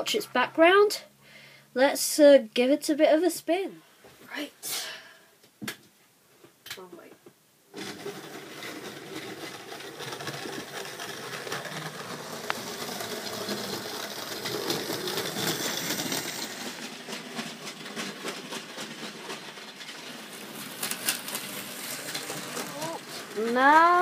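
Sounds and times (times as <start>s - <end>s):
model train motor whirring: 7.8s - 24.0s.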